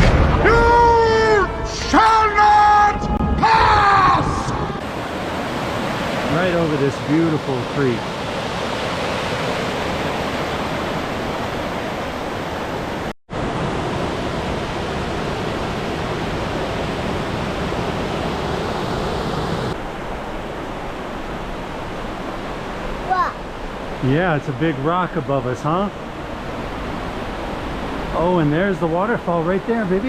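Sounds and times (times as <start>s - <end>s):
creek water rushing: 4.8s - 30.0s.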